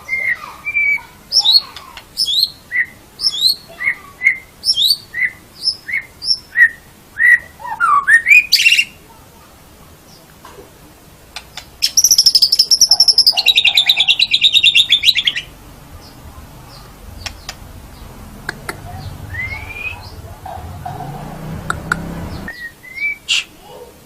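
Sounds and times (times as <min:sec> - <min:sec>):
bird singing rapid trill: 0:00.0 - 0:09.0, 0:11.4 - 0:23.5
soft scattered clicks: 0:17.2 - 0:17.7.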